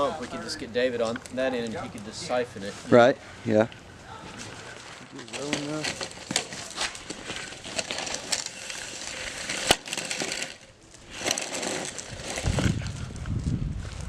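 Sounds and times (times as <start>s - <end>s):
sandbags crunching and scraping: 5.1s - 13.2s
sandbags thudding: 5.2s - 10.6s.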